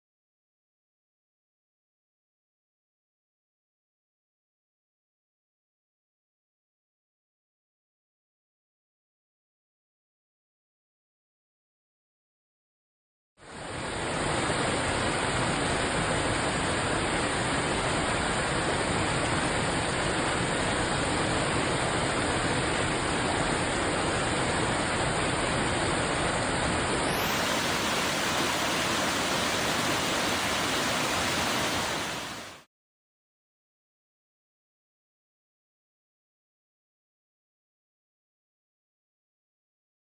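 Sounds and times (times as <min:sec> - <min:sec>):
river water roaring: 0:13.4 - 0:32.6.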